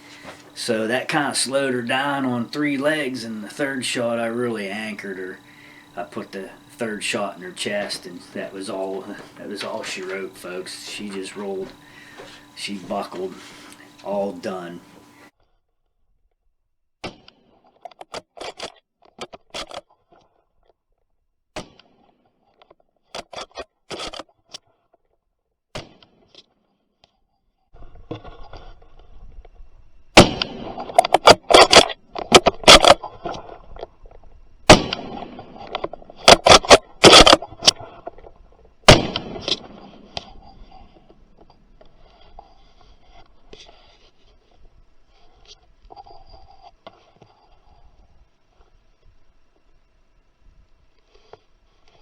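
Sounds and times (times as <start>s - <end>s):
gun handling scrapes and rustles: 0.0s - 15.6s, 17.5s - 20.8s, 22.0s - 25.2s, 30.6s - 49.7s, 50.9s - 52.0s
rifle shots: 30.2s - 33.0s, 34.7s - 37.7s, 38.9s - 40.8s.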